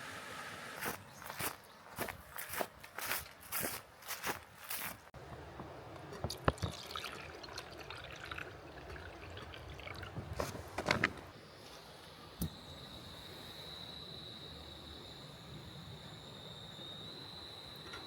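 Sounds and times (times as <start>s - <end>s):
water trickling and dripping: 5.8s - 10.3s.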